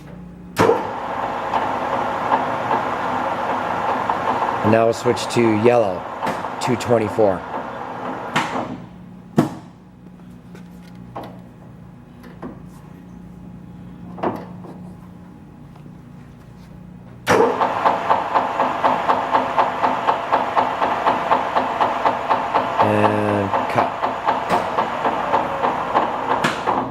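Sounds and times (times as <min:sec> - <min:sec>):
lathe spindle running loudly: 0:00.7 - 0:08.9, 0:17.3 - 0:26.9
lathe hum: 0:00.8 - 0:08.7, 0:17.3 - 0:26.9.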